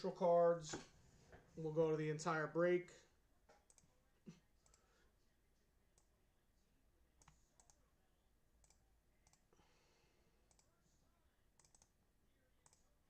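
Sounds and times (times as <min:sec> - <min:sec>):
computer mouse clicks: 0:03.6 - 0:03.9, 0:07.2 - 0:07.8, 0:08.6 - 0:09.5, 0:10.5 - 0:10.7, 0:11.6 - 0:11.9, 0:12.6 - 0:12.8.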